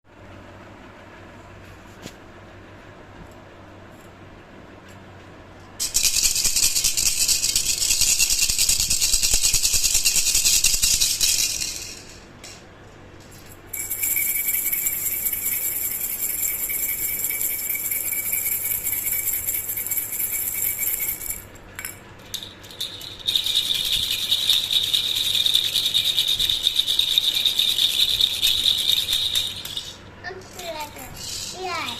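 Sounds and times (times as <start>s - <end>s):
baby rattle shaken: 5.8s - 12.3s, 13.7s - 31.9s.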